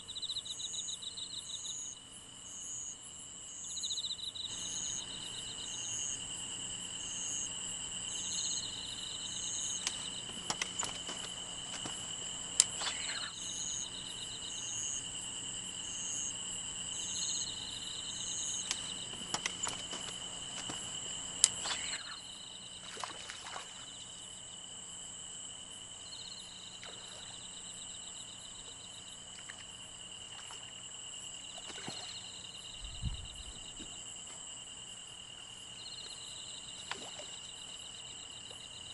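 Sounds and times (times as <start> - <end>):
cricket chirp pulsing: 0.0 - 38.9
insects trilling: 0.0 - 38.9
sharp clicks: 12.6 - 13.0.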